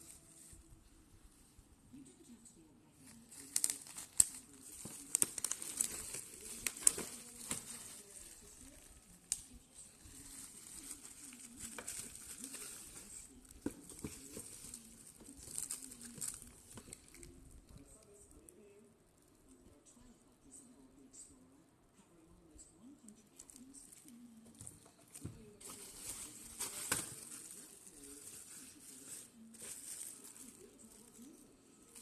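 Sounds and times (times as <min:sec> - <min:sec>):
packaging crinkling and rustling: 0:03.0 - 0:17.4, 0:23.4 - 0:32.0.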